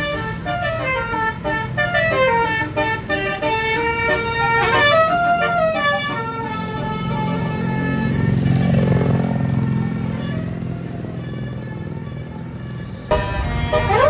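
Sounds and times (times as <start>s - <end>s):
diesel engine rumbling: 0.0s - 14.0s
multi-tone bus horn melody: 0.0s - 14.0s.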